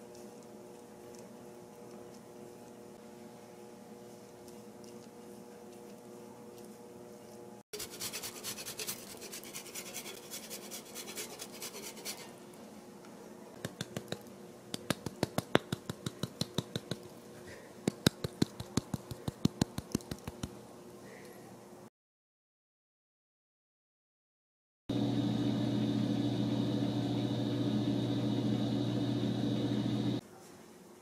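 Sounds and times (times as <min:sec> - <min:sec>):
scratchy rasp: 0:07.8 - 0:12.4
sharp clicks and taps: 0:13.6 - 0:17.1, 0:17.8 - 0:20.6
faint steady hum: 0:24.9 - 0:31.0.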